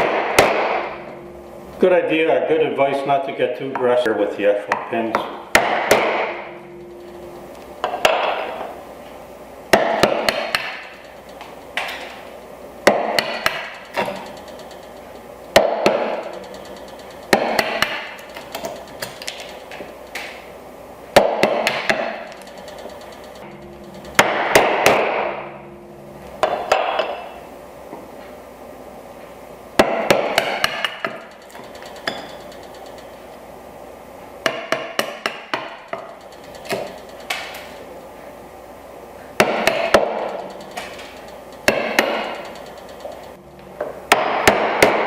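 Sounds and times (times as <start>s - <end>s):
mallet striking chisel in wood: 5.2s - 6.3s, 9.7s - 12.0s, 17.3s - 19.4s, 34.4s - 36.1s.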